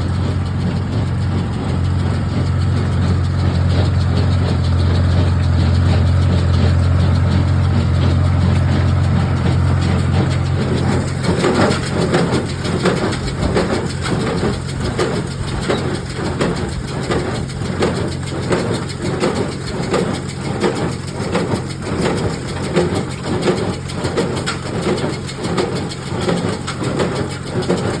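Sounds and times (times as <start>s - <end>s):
tractor engine running: 0.0s - 28.0s.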